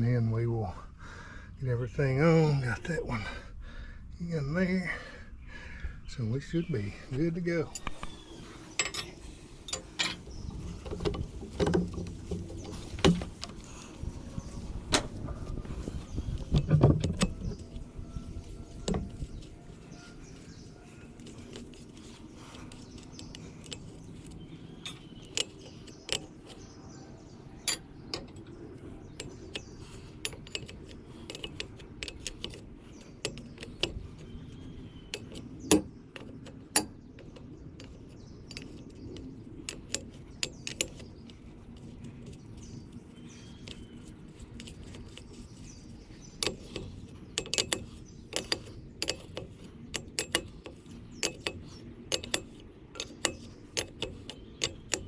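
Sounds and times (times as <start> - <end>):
metallic clicks of hand tools: 29.1 - 34.0, 35.1 - 42.4, 46.4 - 55.0.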